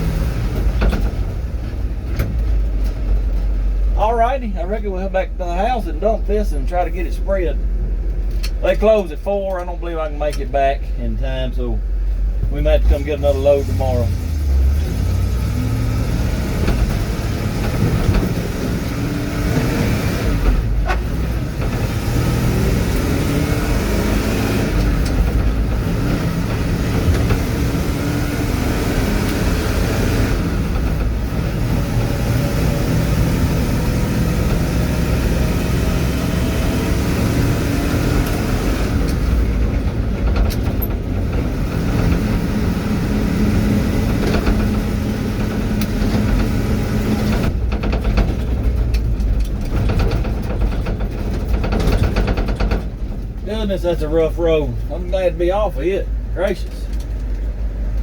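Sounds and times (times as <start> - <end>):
road and tyre noise: 0.0 - 58.0
truck engine droning: 0.0 - 58.0.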